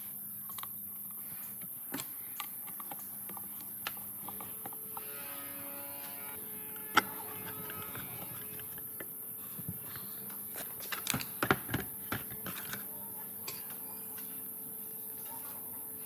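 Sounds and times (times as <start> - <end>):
electric motor hum: 3.2 - 10.5.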